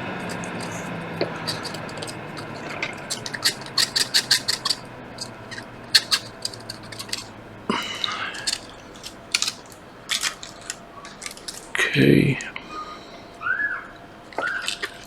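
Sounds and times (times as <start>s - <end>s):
brush scrubbing circuit board: 0.0s - 7.4s
short rising squeak: 0.0s - 7.4s.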